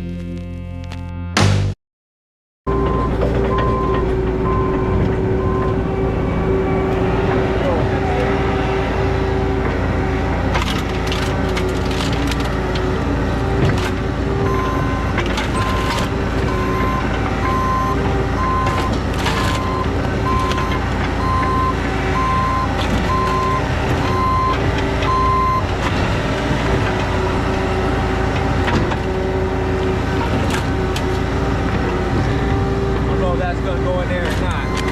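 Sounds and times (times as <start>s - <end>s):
reversing alarm beeping: 2.7s - 8.5s, 14.3s - 25.7s, 34.3s - 34.9s
diesel engine running: 2.7s - 34.9s.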